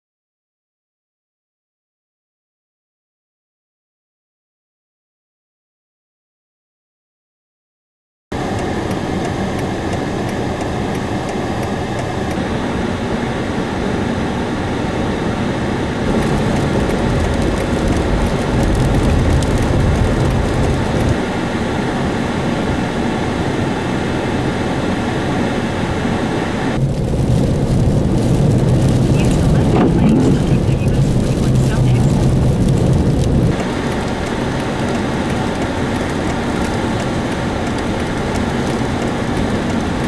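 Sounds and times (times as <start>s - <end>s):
car driving on snowy road: 8.4s - 40.0s.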